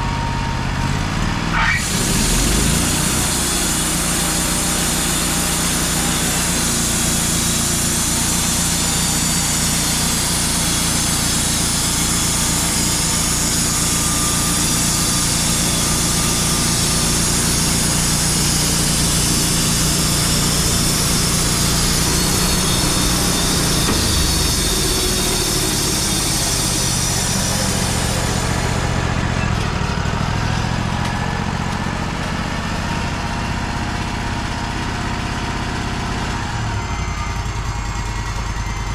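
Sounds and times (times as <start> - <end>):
sawmill engine running: 0.0 - 38.9
band saw blade cutting log: 1.3 - 31.2.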